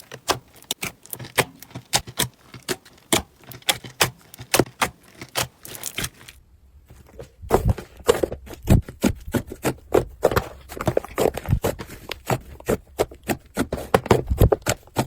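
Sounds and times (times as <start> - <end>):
slime crackling and popping: 0.0 - 6.4.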